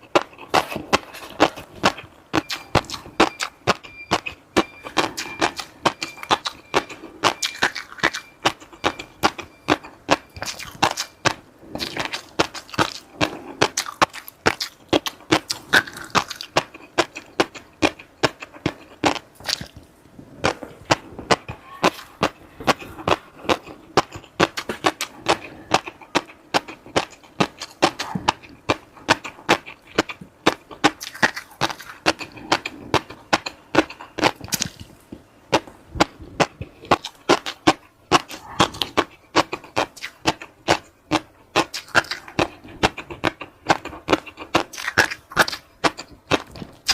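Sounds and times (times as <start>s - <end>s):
mouth smacks: 0.0s - 46.9s
person chewing crunchy food: 0.0s - 46.9s.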